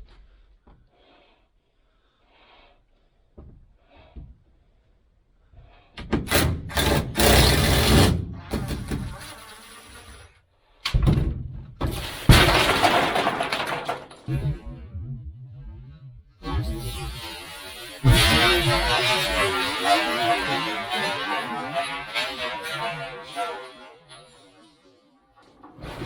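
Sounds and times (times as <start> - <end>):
ceiling panel crashing down: 11.0 - 15.8, 16.6 - 23.4
clatter of falling nuts and debris: 11.9 - 14.3.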